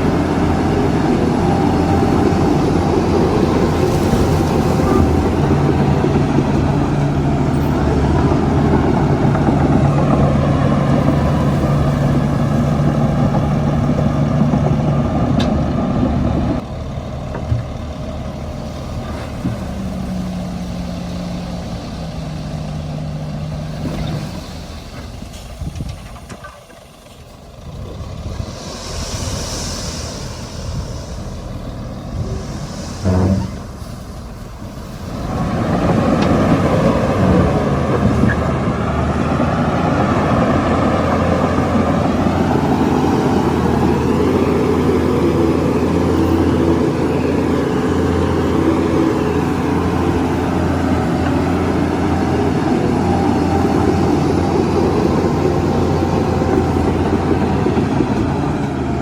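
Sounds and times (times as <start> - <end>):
heavy diesel machinery engines: 0.0 - 59.0
hiss of air: 28.2 - 39.1.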